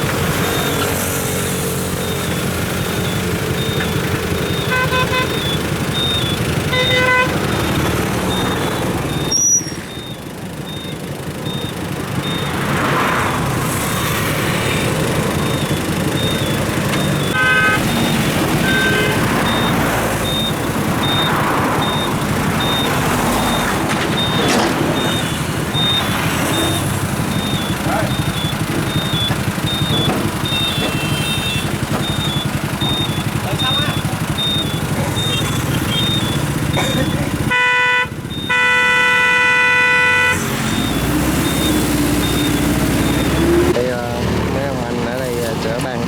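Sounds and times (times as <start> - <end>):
truck engine running: 0.0 - 46.0
reversing alarm beeping: 0.1 - 43.8
short horn toots: 6.7 - 7.5, 17.3 - 18.0, 30.5 - 31.8, 35.2 - 40.9.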